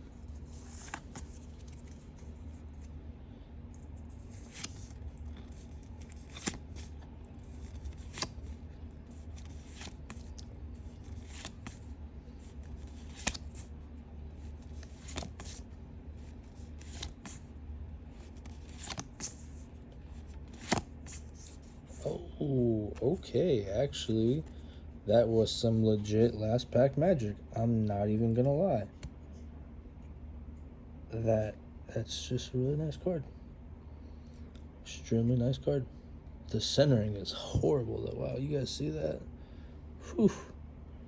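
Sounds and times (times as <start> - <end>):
low steady hum: 0.0 - 41.0
trading cards flicking: 0.3 - 2.9, 3.8 - 13.8, 14.4 - 17.5, 18.1 - 22.0.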